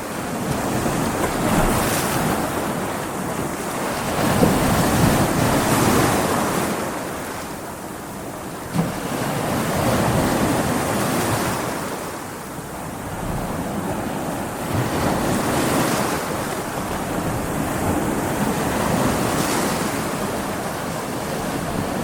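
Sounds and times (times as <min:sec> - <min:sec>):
waves breaking: 0:00.0 - 0:22.0
wind: 0:00.0 - 0:22.0.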